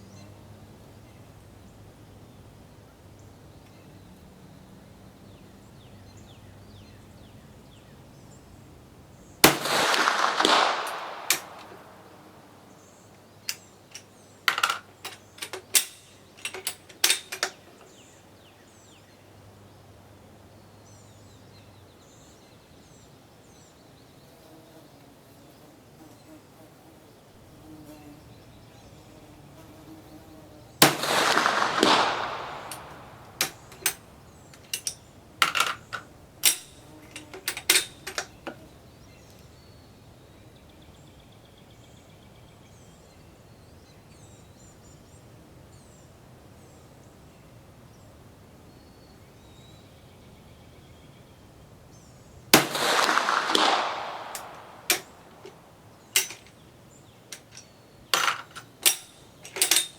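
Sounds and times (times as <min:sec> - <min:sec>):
rifle shot cracking with echo: 0:09.4 - 0:12.6, 0:30.8 - 0:34.1, 0:52.6 - 0:55.5
rifle bolt metallic clicks: 0:30.8 - 0:38.3.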